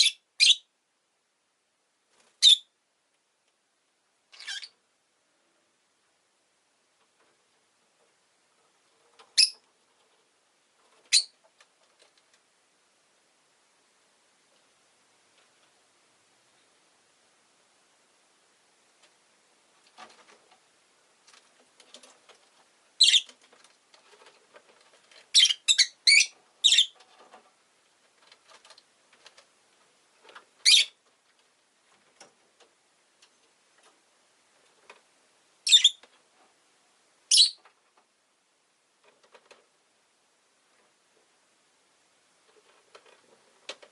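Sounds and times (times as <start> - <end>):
lovebird shrill calls: 2.4 - 2.7, 4.4 - 4.7, 9.4 - 9.6, 11.1 - 11.3, 23.0 - 23.3, 25.3 - 27.0, 30.6 - 31.0, 35.6 - 36.0, 37.3 - 37.6
faint ticks and rustles: 5.4 - 43.9.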